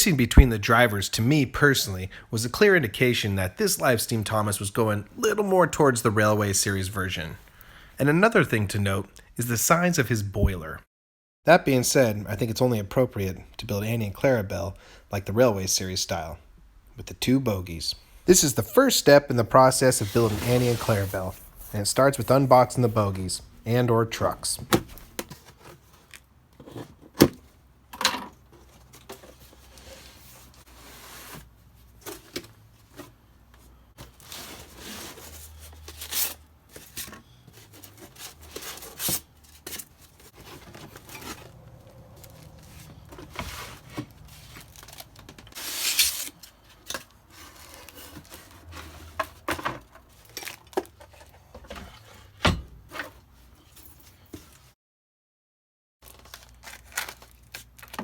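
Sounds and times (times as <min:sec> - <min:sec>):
cardboard packaging rustling and tearing: 0:19.6 - 0:22.3, 0:33.9 - 0:52.0, 0:56.0 - 0:58.0.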